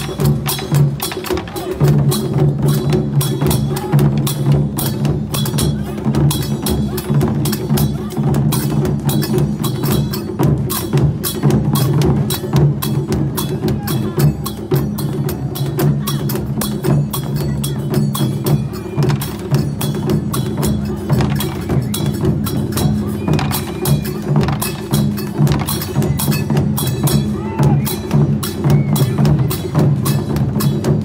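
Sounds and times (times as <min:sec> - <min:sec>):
fast percussion music: 0:00.0 - 0:31.0.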